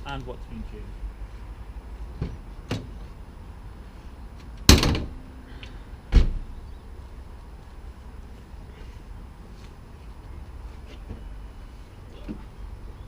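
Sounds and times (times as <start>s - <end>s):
heavy ringing thumps: 4.7s - 5.5s.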